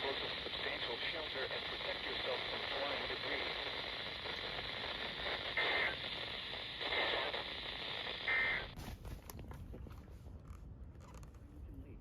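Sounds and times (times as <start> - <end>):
radio static hiss: 0.0 - 8.8
data tone bursts: 1.4 - 8.7.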